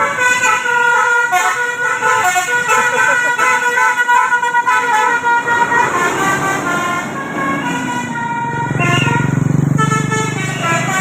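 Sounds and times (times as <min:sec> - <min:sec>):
multi-tone air horn tune: 0:00.0 - 0:11.0
low engine buzz: 0:05.3 - 0:11.0.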